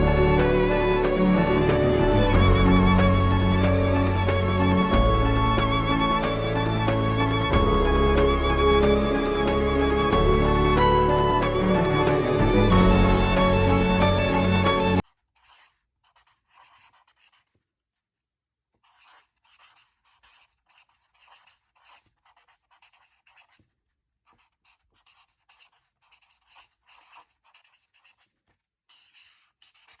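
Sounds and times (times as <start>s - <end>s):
faint scratching strokes: 13.2s - 17.6s, 18.8s - 23.7s, 24.3s - 30.0s.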